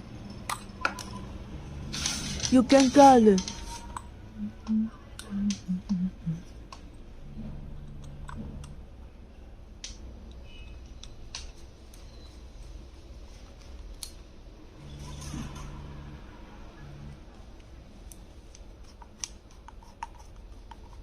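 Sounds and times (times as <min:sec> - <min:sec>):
low hum: 0:03.4 - 0:09.9.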